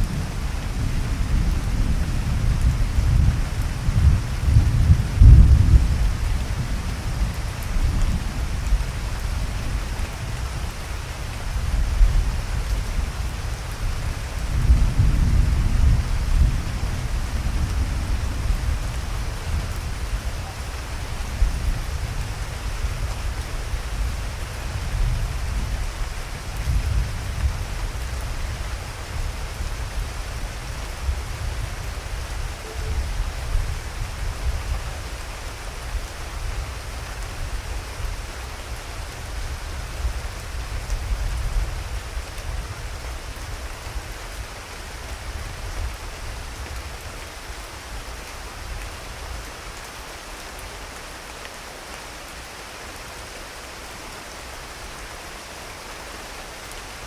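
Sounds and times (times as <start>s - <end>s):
thunder rumbling: 0.0s - 9.8s
steady rain: 0.0s - 57.0s.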